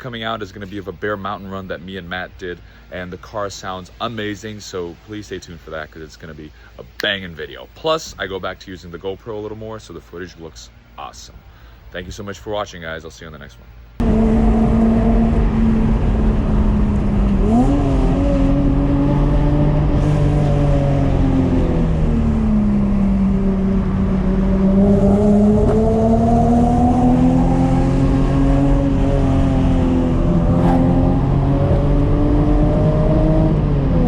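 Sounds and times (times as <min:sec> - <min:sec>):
inline-six car engine revving: 0:14.0 - 0:34.0.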